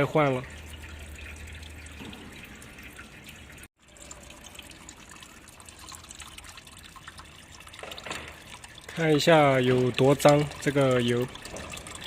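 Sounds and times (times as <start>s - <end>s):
faint fluid trickle: 0.0s - 12.0s
fluid dripping: 0.0s - 12.0s.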